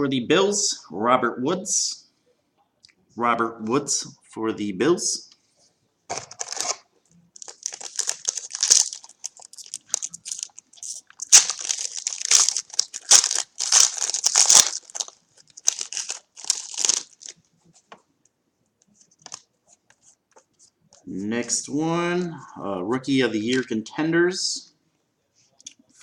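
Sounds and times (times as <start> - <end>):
wrapper being torn and crinkled: 6.2 - 6.8, 7.4 - 17.4.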